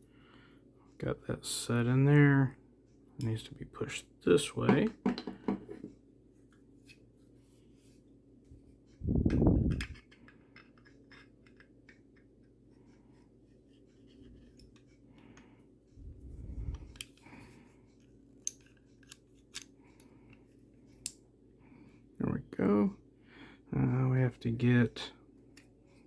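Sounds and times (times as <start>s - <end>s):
metal gun parts clicking: 9.7s - 12.3s, 18.4s - 19.8s.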